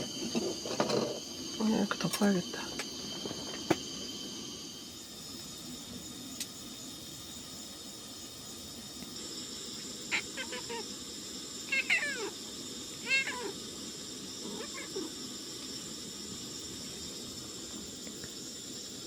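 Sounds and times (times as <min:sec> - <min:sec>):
cooking pot hissing: 0:00.0 - 0:19.0
cat meowing: 0:10.1 - 0:10.8, 0:11.7 - 0:12.4, 0:13.0 - 0:13.6, 0:14.5 - 0:15.1.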